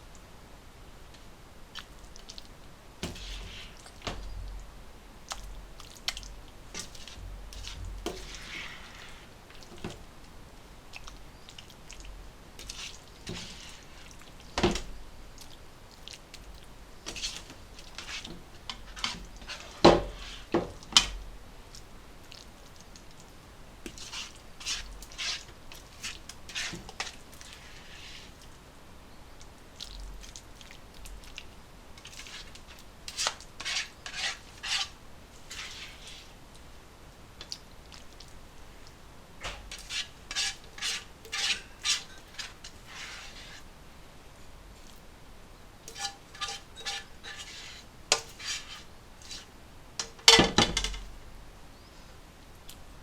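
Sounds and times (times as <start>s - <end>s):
dishes and utensils clinking: 45.9s - 47.6s.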